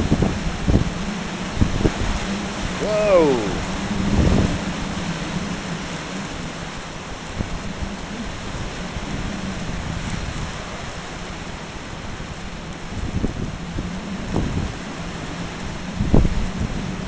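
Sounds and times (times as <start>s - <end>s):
wind-driven rain: 0.0s - 17.0s.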